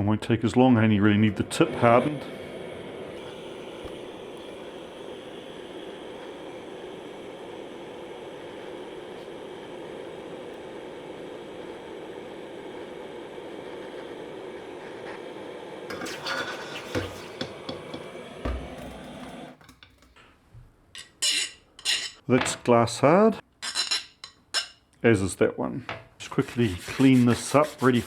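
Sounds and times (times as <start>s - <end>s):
torch flame roaring: 0.6s - 19.7s.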